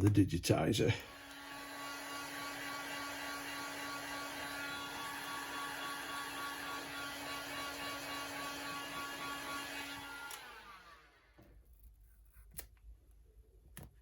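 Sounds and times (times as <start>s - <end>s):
electric blower motor whirring: 1.0s - 11.3s.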